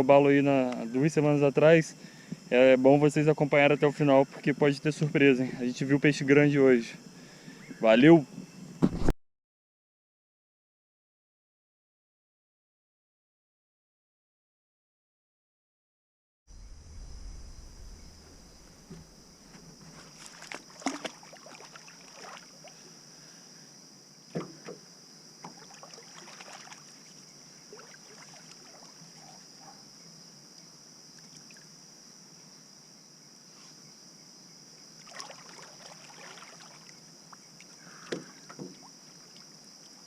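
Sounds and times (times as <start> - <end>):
night insects chirring: 0.0 - 8.8, 16.5 - 40.0
water splashing and sloshing: 17.2 - 23.0, 25.4 - 29.6, 35.0 - 40.0.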